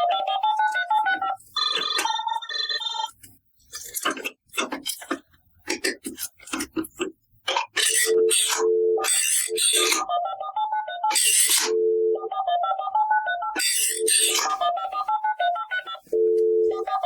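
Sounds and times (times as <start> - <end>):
toy electronic beeping tune: 7.8 - 10.1, 11.1 - 11.9, 13.6 - 14.6.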